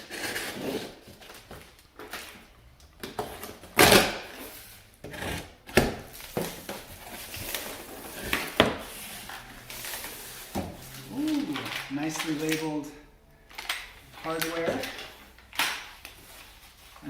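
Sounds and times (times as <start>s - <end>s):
cardboard rustling: 5.7s - 12.8s, 13.5s - 17.0s.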